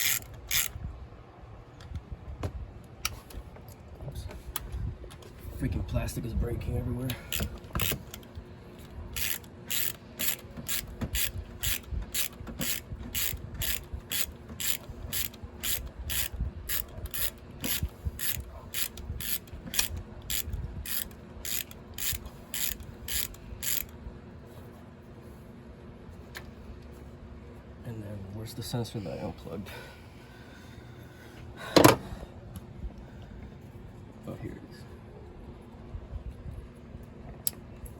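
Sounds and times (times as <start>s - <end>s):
ratchet wrench clicking: 0.0s - 0.8s, 9.1s - 23.9s.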